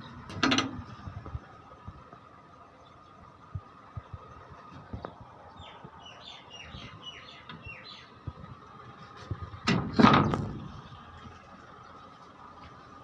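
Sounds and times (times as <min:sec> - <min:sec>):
bird chirping: 0:05.5 - 0:08.2.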